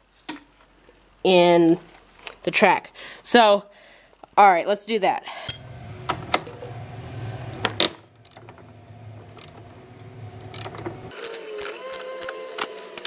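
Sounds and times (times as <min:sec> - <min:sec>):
low hum: 0:05.5 - 0:11.1.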